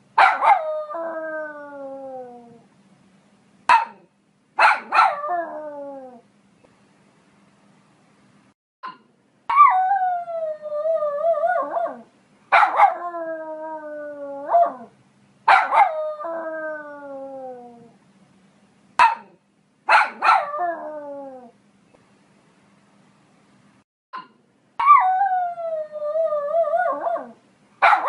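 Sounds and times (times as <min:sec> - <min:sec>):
dog yap: 0:00.2 - 0:00.6, 0:03.7 - 0:05.2, 0:09.5 - 0:09.8, 0:12.6 - 0:13.0, 0:15.5 - 0:16.0, 0:19.0 - 0:20.6, 0:24.8 - 0:25.1
dog howling barks: 0:00.2 - 0:02.6, 0:04.6 - 0:06.2, 0:11.1 - 0:14.9, 0:15.5 - 0:17.8, 0:19.0 - 0:21.5, 0:24.8 - 0:28.0.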